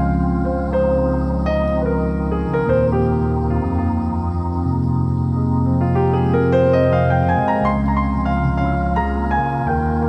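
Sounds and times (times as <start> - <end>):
calm new-age instrumental music: 0.0 - 10.0.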